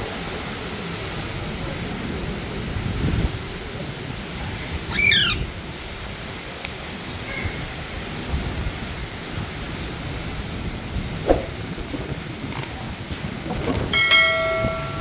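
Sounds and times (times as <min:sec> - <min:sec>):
parakeet harsh call: 0:04.5 - 0:05.6.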